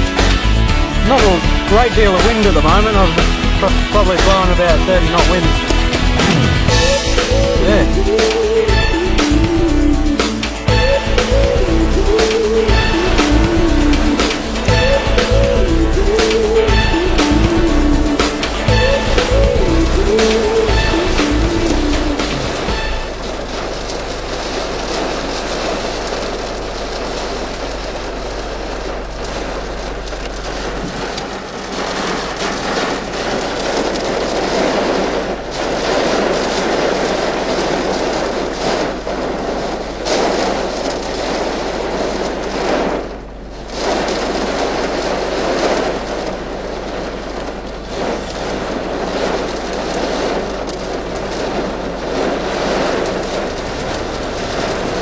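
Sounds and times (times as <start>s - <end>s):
rain: 0.0s - 55.0s
storm wind gusting: 0.0s - 55.0s.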